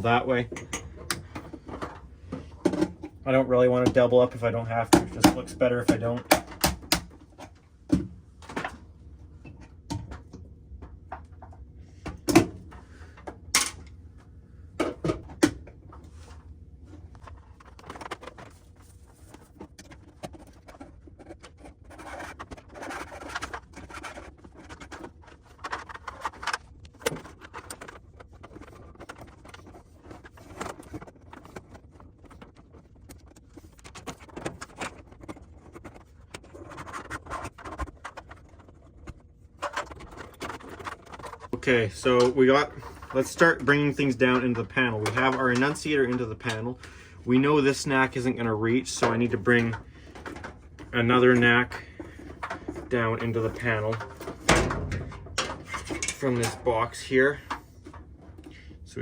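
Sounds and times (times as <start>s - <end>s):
wire rustling and scraping: 16.0s - 46.7s.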